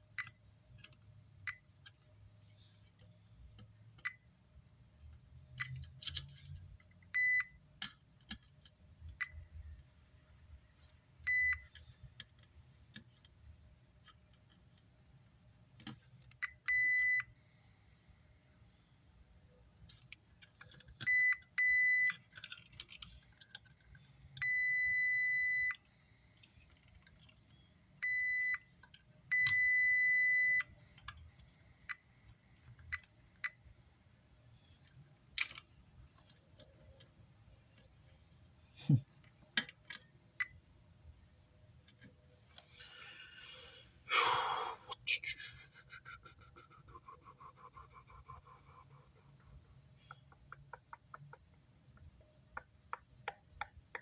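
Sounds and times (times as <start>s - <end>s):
multimeter beeps: 1.5s - 1.7s, 4.0s - 4.3s, 7.1s - 7.6s, 11.2s - 11.8s, 16.3s - 18.0s, 20.9s - 22.4s, 24.4s - 26.0s, 27.5s - 28.7s, 29.3s - 33.7s.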